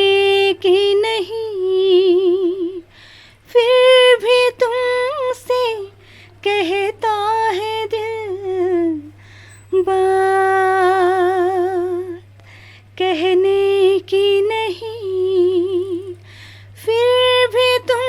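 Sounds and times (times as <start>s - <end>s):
breath: 2.9s - 3.4s, 6.0s - 6.4s, 9.2s - 9.6s, 12.4s - 12.9s, 16.2s - 16.8s.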